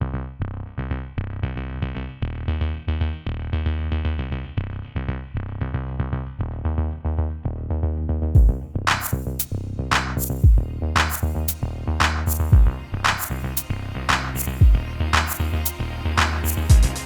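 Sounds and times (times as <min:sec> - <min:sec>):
electronic synthesizer music: 0:10.2 - 0:17.0.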